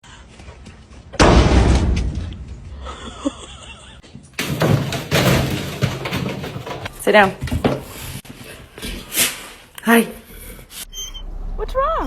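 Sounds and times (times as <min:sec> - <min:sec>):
loud thump: 0:01.2 - 0:02.8.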